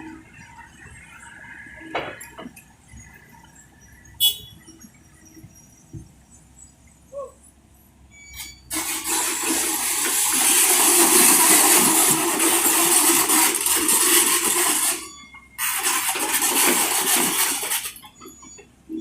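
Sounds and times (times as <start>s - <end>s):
soil pouring into truck bed: 8.7s - 18.0s.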